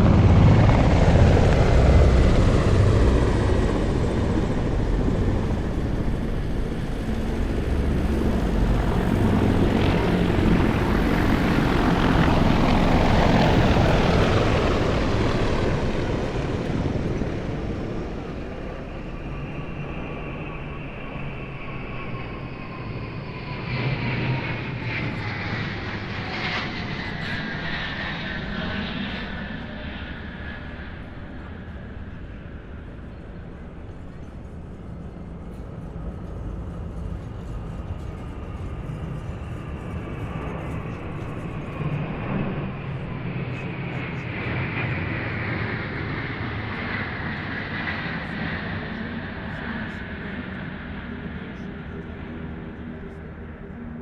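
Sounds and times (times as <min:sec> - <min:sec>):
helicopter rotor chop: 0:00.0 - 0:20.1
jet turbofan whine: 0:00.0 - 0:54.0.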